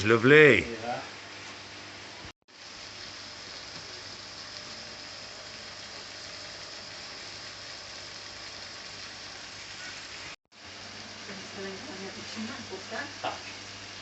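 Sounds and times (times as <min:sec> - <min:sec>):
air pumps and filters running: 0:00.0 - 0:14.0.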